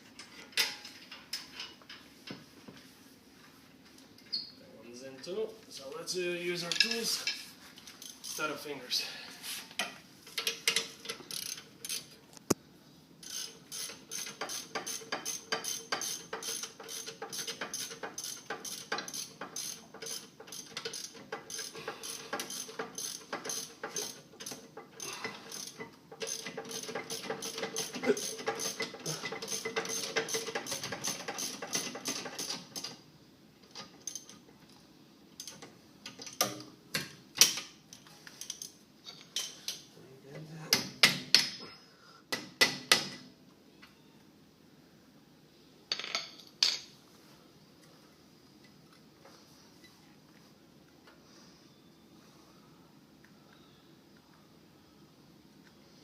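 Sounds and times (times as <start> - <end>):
ratchet wrench clicking: 10.4 - 12.1, 13.2 - 24.6, 25.5 - 32.5.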